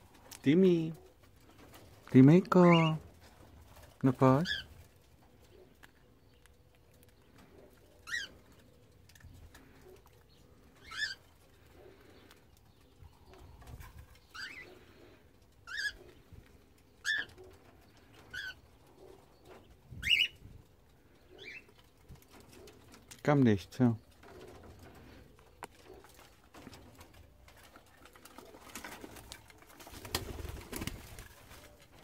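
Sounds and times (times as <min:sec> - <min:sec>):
cockatiels calling: 0:08.0 - 0:08.4, 0:10.8 - 0:11.2, 0:14.3 - 0:14.7, 0:15.6 - 0:16.1, 0:17.0 - 0:17.4, 0:18.3 - 0:18.6, 0:20.0 - 0:20.4.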